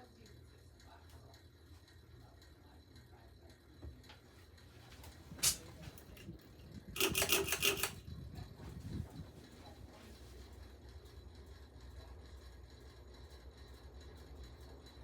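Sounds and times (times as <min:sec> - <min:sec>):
ceiling fan humming: 0:00.0 - 0:15.0
rattle of clicks: 0:07.0 - 0:08.0.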